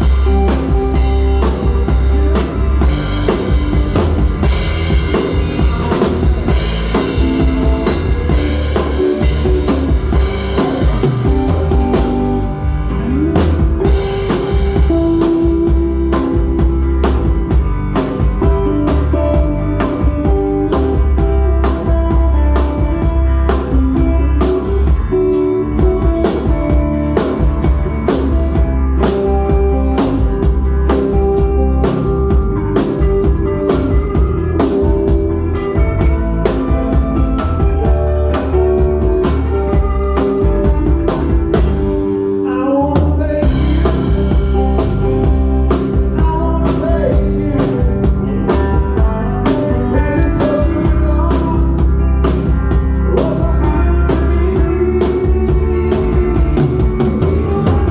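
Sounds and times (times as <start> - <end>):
lead guitar bending strings: 0.0 - 42.7
rock band playing blues-rock: 0.0 - 57.9.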